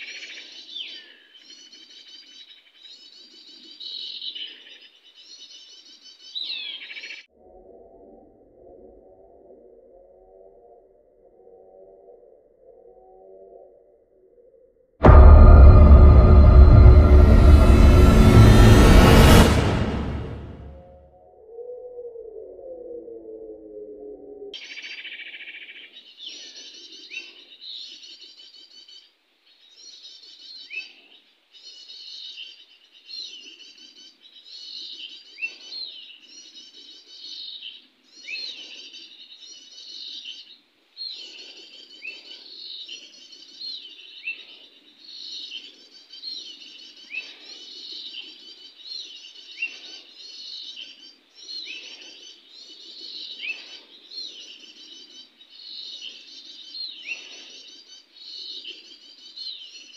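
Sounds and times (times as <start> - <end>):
songbird chirping: 0.0 - 7.3, 24.6 - 59.9.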